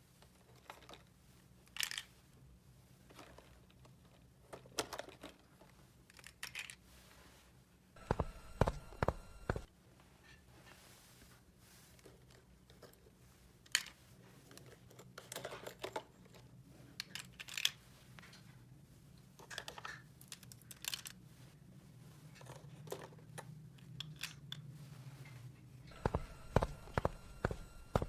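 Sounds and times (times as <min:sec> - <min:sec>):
faint steady hum: 0:08.0 - 0:09.7, 0:24.8 - 0:28.0
sharp taps: 0:08.0 - 0:09.7, 0:25.9 - 0:28.0.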